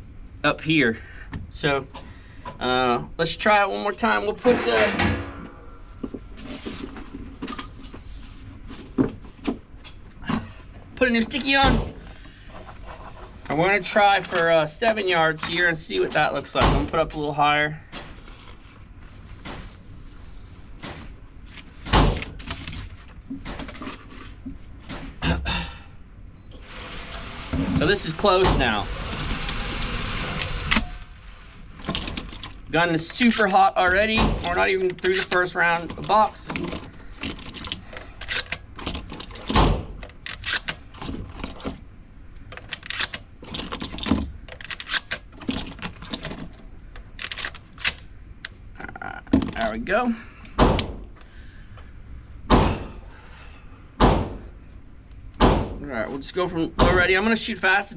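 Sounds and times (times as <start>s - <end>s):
loud thump: 4.5s - 5.8s, 52.5s - 53.0s, 54.0s - 54.4s, 55.4s - 55.8s
handling knocks and clicks: 31.8s - 48.6s
shotgun shells clicking and clacking: 42.5s - 45.2s, 47.0s - 48.0s
heavy thunks: 52.4s - 53.0s, 54.0s - 54.5s, 55.4s - 55.8s.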